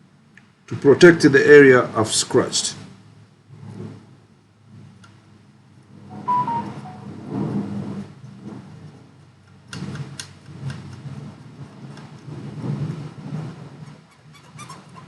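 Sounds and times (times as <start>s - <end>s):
short electronic beep: 6.1s - 7.2s.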